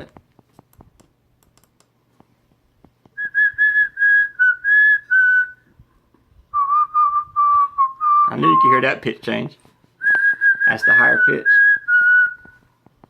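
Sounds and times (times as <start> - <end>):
faint clicks: 0.6 - 2.3
person whistling a melody: 3.2 - 5.7, 6.5 - 8.8, 10.0 - 12.6.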